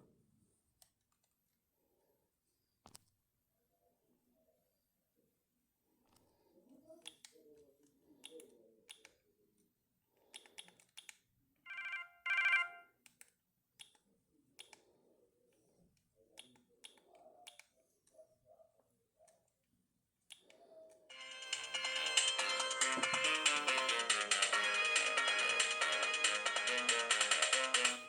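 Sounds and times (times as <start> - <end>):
electronic ringtone trills: 11.7 - 12.9, 21.1 - 28.0.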